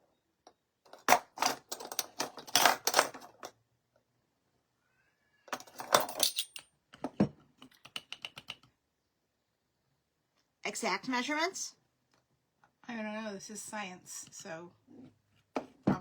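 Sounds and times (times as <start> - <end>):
measuring spoons clinking: 5.6 - 6.6.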